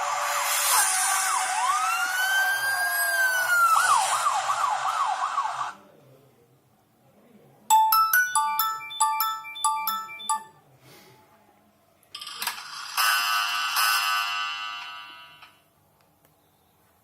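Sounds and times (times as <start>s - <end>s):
siren-like ringtone wails: 0.7s - 5.8s, 7.7s - 10.6s
ringtone mallet notes: 7.7s - 10.6s.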